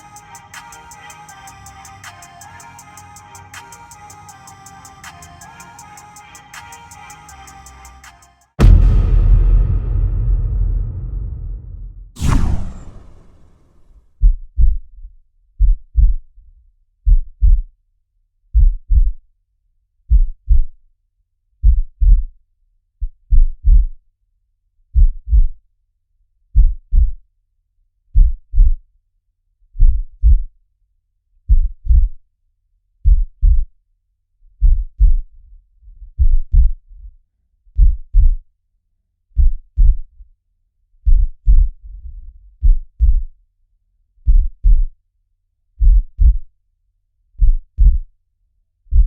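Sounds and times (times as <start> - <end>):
heartbeat thumps: 8.6 - 13.0
loud boom: 8.6 - 13.6.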